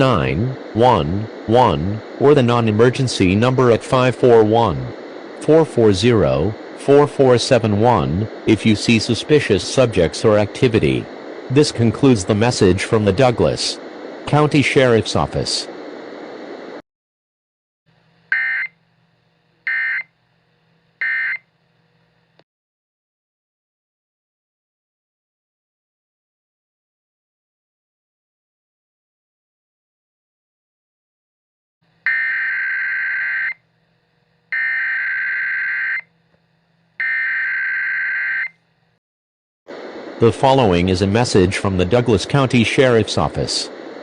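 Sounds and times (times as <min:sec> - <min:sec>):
faint low hum: 0:00.0 - 0:16.8
screeching data tone bursts: 0:18.3 - 0:18.7, 0:32.1 - 0:33.6, 0:34.6 - 0:36.1, 0:37.0 - 0:38.6.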